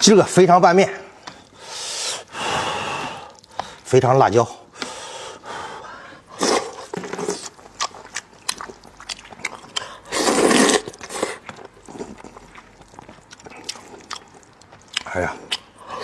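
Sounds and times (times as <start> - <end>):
chewing with wet mouth clicks: 3.3 - 3.8, 7.4 - 16.0.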